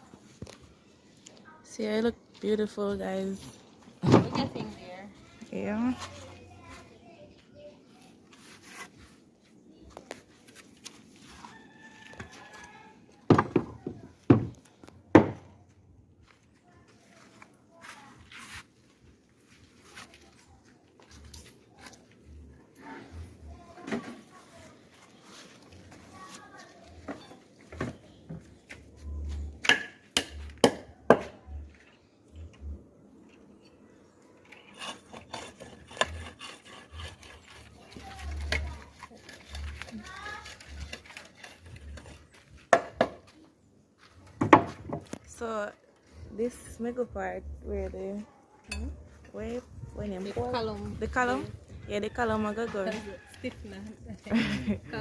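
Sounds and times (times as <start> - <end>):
scraping and rubbing: 7.9 - 9.3, 17.9 - 18.8, 34.4 - 42.7
sharp knocks on building materials: 13.3 - 15.5, 29.6 - 31.4, 42.7 - 43.3, 44.4 - 45.0.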